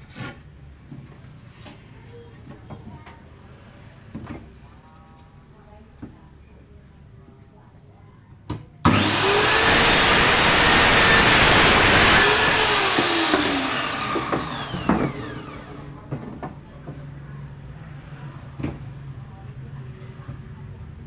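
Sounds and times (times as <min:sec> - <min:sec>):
miter saw cutting board: 0:08.9 - 0:15.9.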